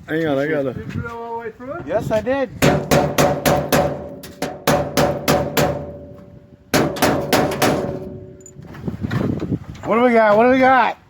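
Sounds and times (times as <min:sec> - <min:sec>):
hammer striking metal box: 0:02.6 - 0:08.4.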